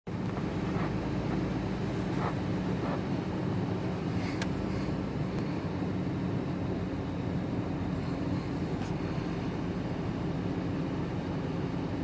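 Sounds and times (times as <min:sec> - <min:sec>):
engine clicking: 0:00.1 - 0:05.5
car engine running: 0:00.1 - 0:12.0.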